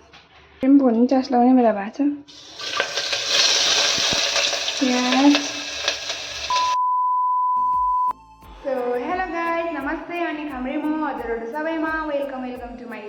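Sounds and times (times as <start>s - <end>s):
food sizzling in frying pan: 2.3s - 6.8s
high-pitched beep: 6.6s - 8.1s.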